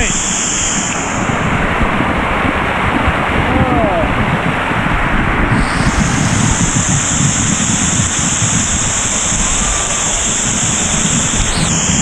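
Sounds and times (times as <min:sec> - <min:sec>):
high-pitched hiss: 0:00.0 - 0:01.3, 0:05.5 - 0:12.0
wind buffeting microphone: 0:00.0 - 0:12.0.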